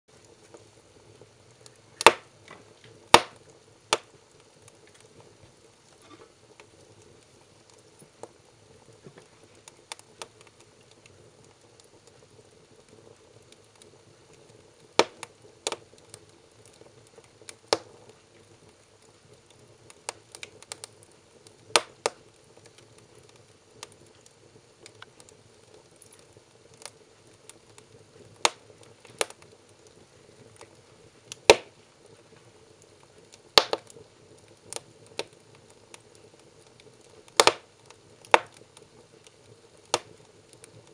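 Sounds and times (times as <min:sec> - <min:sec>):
firewood crackling: 0:00.1 - 0:40.9
sharp pops of burning wood: 0:00.2 - 0:12.2, 0:12.8 - 0:40.9.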